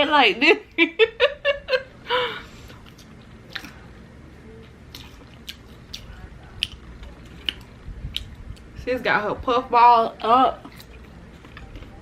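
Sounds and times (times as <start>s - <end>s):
woman laughing: 0.4s - 2.4s
wet mouth clicks from chewing: 4.9s - 8.7s.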